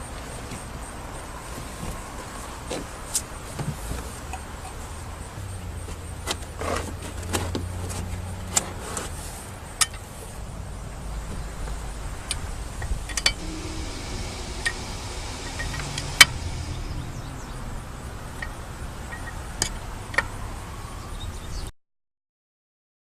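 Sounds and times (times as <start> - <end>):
low steady rumble: 10.2 - 20.2.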